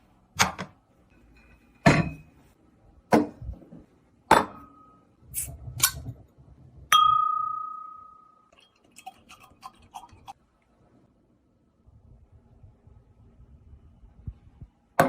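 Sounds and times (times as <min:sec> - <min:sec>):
tableware knocking: 0:01.8 - 0:02.3
ringing strike on tableware: 0:06.9 - 0:08.5.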